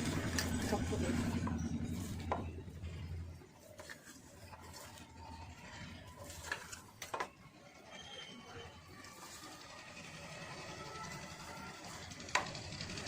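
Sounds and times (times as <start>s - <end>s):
whisk stirring batter in bowl: 0.0s - 7.4s.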